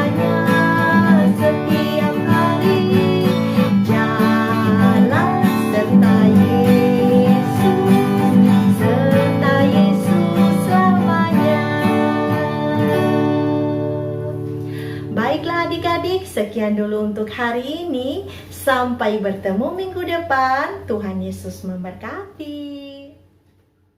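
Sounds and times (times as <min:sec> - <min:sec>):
praise song with acoustic guitar: 0:00.0 - 0:16.0.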